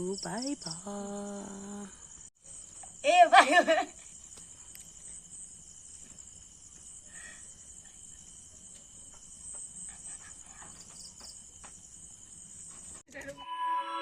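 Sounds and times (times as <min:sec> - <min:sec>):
insects trilling: 0:00.0 - 0:13.0.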